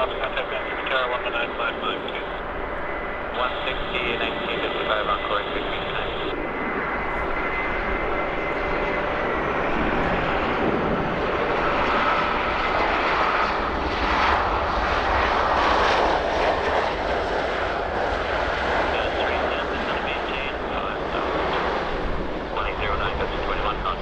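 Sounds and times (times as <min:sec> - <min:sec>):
faint high whine: 0:00.0 - 0:14.2
jet engines running: 0:00.0 - 0:24.0.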